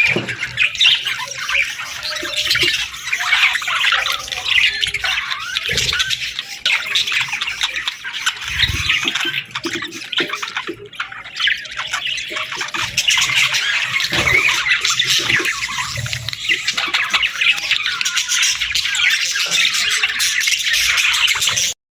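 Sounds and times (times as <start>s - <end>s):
budgerigars chattering and chirping: 0.0s - 21.8s.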